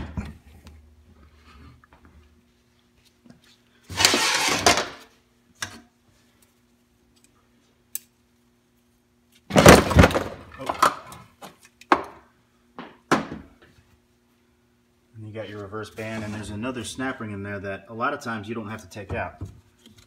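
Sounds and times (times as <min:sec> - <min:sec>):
metal parts clattering and scraping: 0:03.9 - 0:05.1.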